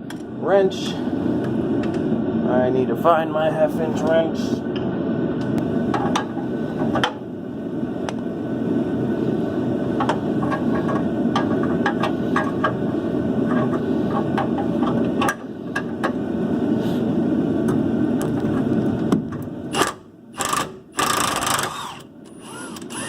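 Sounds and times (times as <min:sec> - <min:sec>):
steady low rumble: 0:00.0 - 0:20.4.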